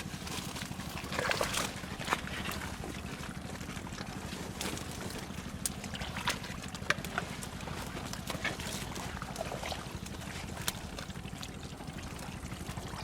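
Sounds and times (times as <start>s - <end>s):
low motor hum: 0.0s - 13.0s
water splashing: 0.0s - 13.0s
sharp wet clicks: 3.9s - 13.0s.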